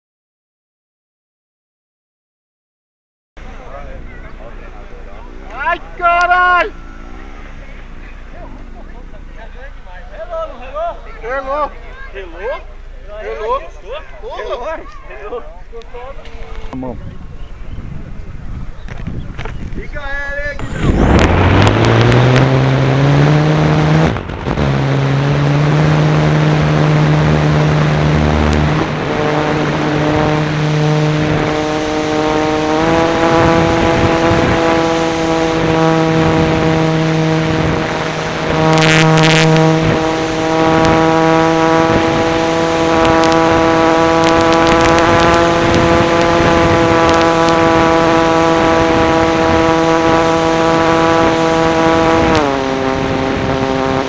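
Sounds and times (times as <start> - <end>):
model airplane engine running: 20.6 - 54.0.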